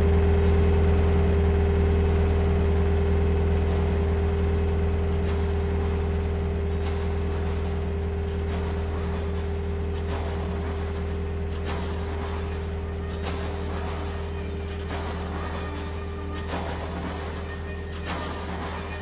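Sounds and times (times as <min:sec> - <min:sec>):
low droning hum: 0:00.0 - 0:19.0.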